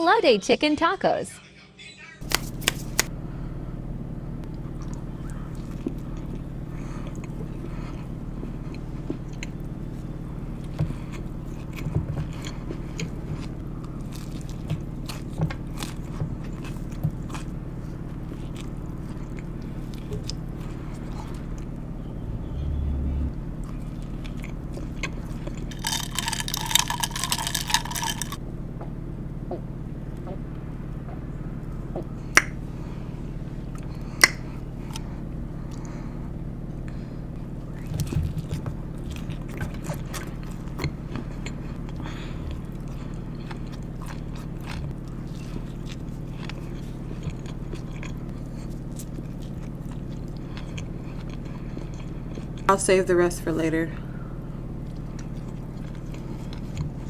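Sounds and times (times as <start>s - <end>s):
biting and chewing food: 2.2s - 3.1s, 4.4s - 28.4s, 32.3s - 33.0s, 33.6s - 52.8s, 54.1s - 57.0s
steady low hum: 2.2s - 57.0s
mouth clicks: 34.2s - 34.5s.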